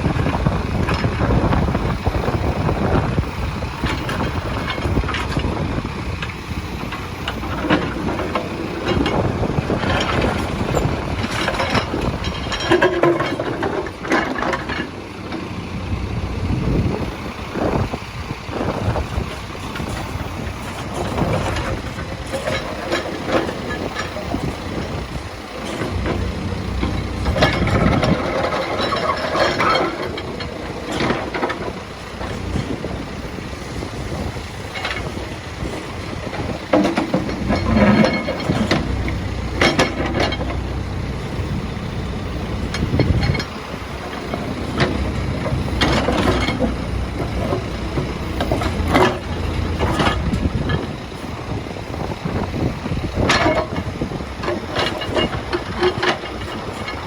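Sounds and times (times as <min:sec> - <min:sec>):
backhoe loader diesel engine: 0:00.0 - 0:57.0.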